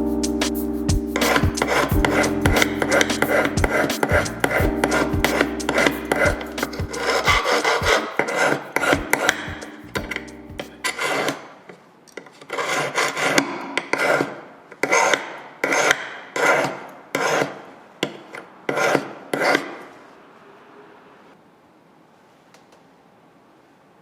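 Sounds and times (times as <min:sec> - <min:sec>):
hand file rasping on metal: 0:05.8 - 0:09.3.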